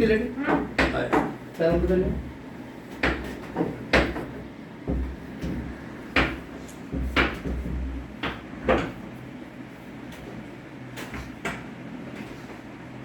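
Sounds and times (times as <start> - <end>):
knocks and thuds of body adjustment: 3.0 - 8.0.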